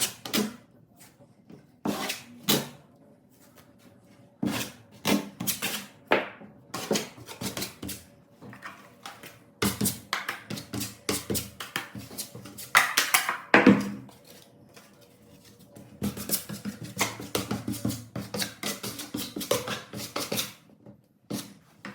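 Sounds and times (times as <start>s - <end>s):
hand tool scraping drywall: 1.8s - 2.7s, 4.4s - 6.0s.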